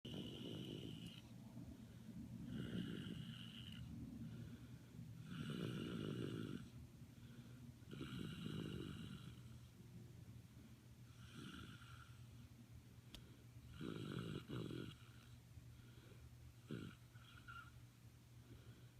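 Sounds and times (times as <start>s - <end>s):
rasping snores: 0.1s - 1.3s, 2.4s - 3.9s, 5.2s - 6.8s, 7.9s - 9.6s, 11.2s - 12.2s, 13.7s - 15.3s, 16.6s - 17.7s.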